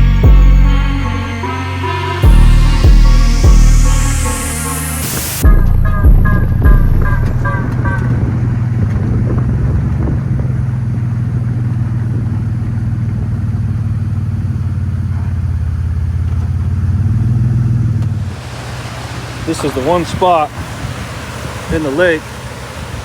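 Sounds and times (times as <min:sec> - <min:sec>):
electronic music: 0:00.0 - 0:08.2
jeep engine and road noise: 0:00.0 - 0:23.0.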